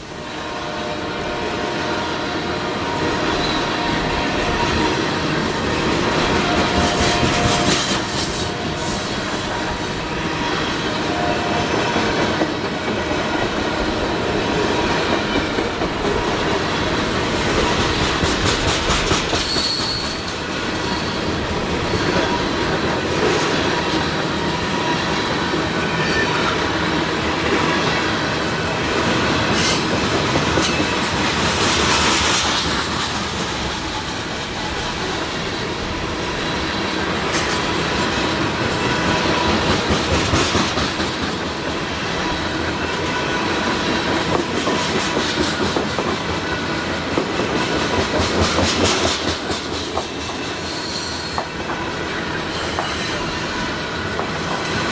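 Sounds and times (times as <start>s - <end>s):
train wheels clattering over rail joints: 14.6s - 24.3s, 29.0s - 53.3s
high wheel squeals: 19.4s - 22.7s.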